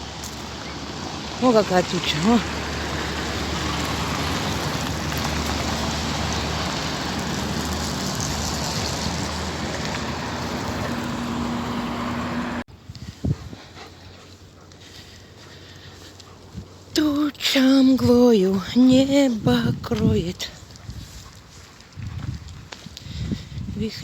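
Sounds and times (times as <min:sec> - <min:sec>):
wind buffeting microphone: 0:02.1 - 0:14.1, 0:16.0 - 0:17.0, 0:17.8 - 0:24.0.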